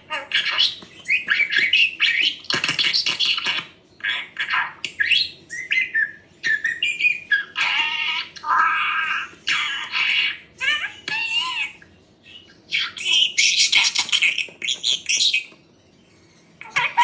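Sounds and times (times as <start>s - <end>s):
budgerigar chattering: 0.1s - 15.6s.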